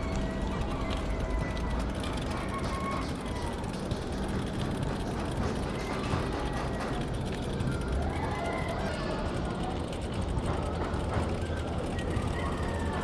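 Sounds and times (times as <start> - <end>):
bicycle freewheel ticking: 0.0 - 13.0
wind: 0.0 - 13.0.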